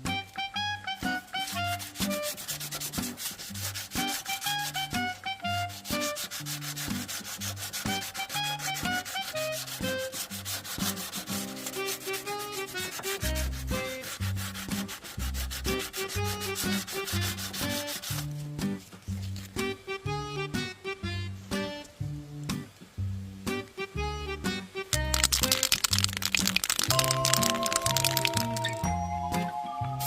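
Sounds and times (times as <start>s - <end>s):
upbeat background music: 0.0s - 18.4s, 23.5s - 30.0s.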